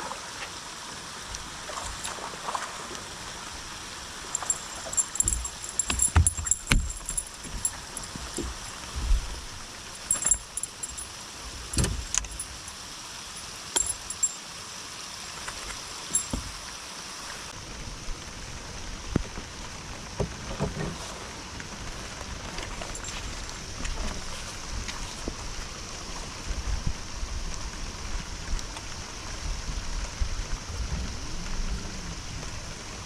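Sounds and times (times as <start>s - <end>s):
steady background hiss: 0.0s - 33.0s
light clicks and knocks: 4.4s - 8.7s.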